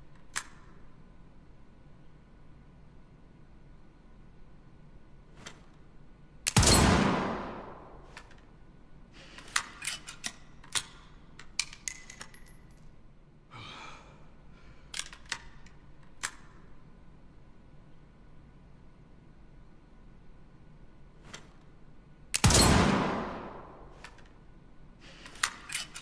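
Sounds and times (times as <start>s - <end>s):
pistol shot: 6.5s - 8.1s, 22.4s - 23.9s.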